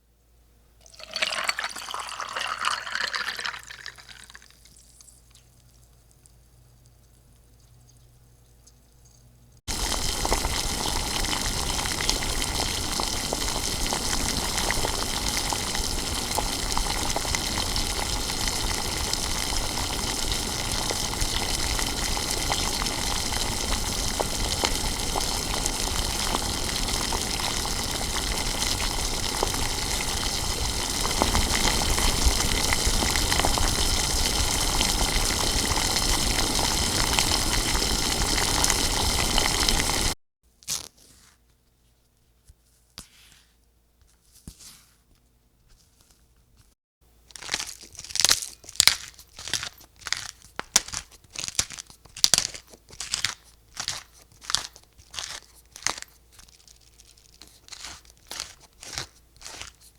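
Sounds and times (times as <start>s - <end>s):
water gushing: 0.8s - 4.8s, 9.7s - 40.2s.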